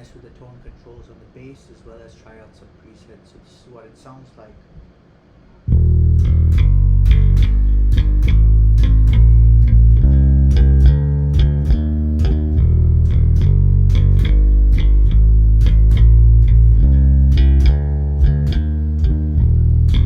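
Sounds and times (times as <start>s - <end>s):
electric bass plucked notes: 5.7s - 20.0s.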